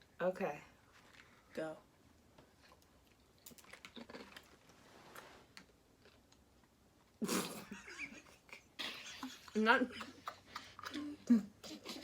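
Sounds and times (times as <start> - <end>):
chewing and crunching: 2.6 - 4.8.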